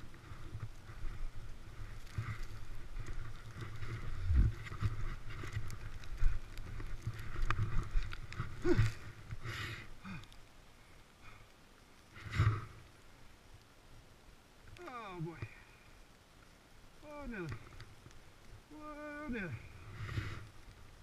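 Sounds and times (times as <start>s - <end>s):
wind rumbling over microphone: 0.0s - 9.4s
skis scraping on snow: 0.0s - 9.8s.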